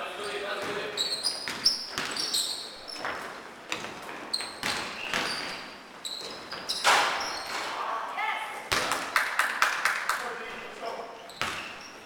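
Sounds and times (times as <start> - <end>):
sneakers squeaking on court: 0.2 - 7.8, 11.0 - 12.0
basketball bouncing: 1.4 - 2.2, 3.0 - 6.7, 8.7 - 9.1, 11.4 - 11.8.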